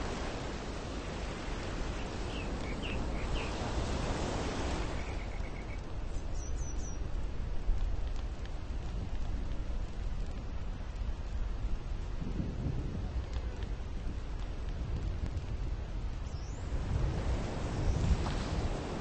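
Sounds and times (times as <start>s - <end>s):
bird chirps: 2.0s - 3.6s.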